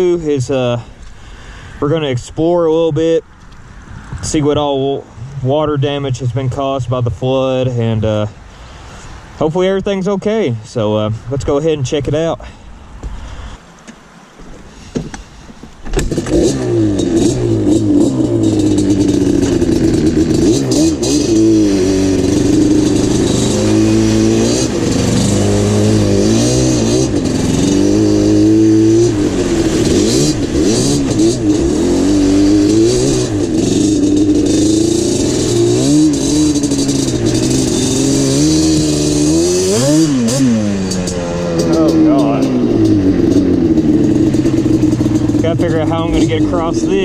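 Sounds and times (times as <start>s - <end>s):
two-stroke engine revving: 16.0s - 47.0s.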